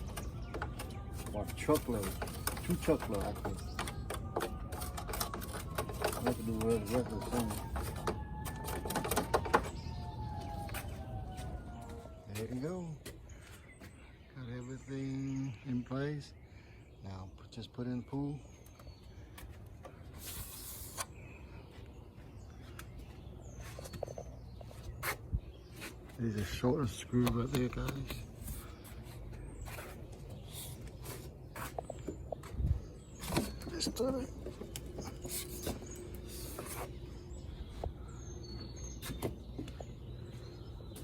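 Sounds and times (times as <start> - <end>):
handling clicks and knocks: 0.0 - 10.0
birds chirping: 0.0 - 41.0.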